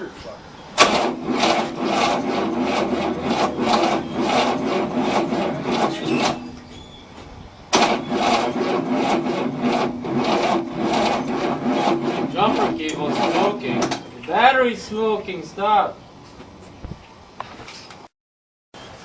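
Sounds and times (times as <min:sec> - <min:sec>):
engine cranking without firing: 0:00.8 - 0:15.2.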